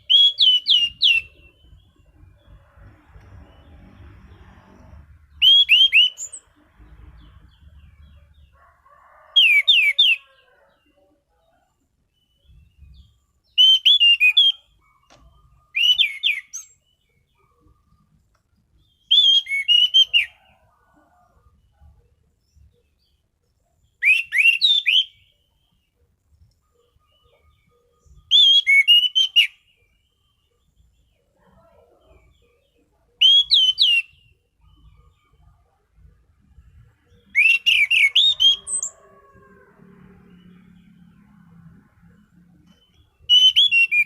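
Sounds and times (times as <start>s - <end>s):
thrush singing whistled notes: 0.0s - 2.9s, 3.6s - 8.1s, 12.3s - 18.1s, 18.7s - 20.7s, 23.9s - 25.8s, 26.6s - 30.4s, 33.2s - 35.2s, 37.0s - 39.2s, 40.1s - 44.0s.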